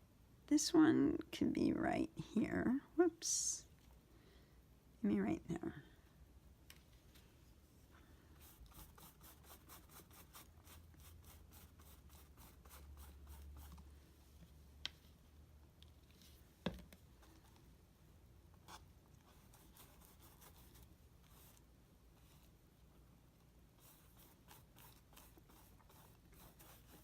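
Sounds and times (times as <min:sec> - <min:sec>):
brush strokes over paper: 0:07.0 - 0:15.3, 0:18.7 - 0:22.6, 0:23.8 - 0:27.0.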